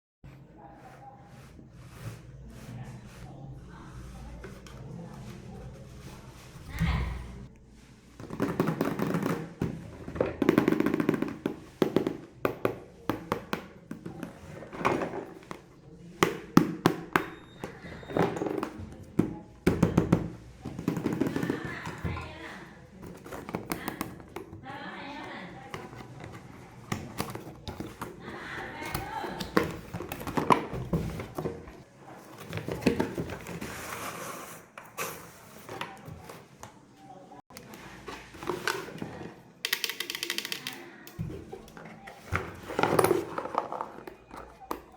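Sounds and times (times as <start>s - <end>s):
plastic toy clicks and taps: 39.7s - 41.2s.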